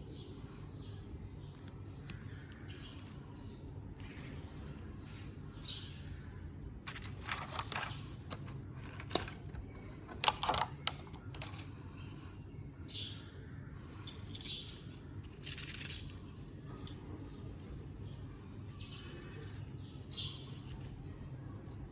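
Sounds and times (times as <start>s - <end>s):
items clattering: 6.9s - 11.7s.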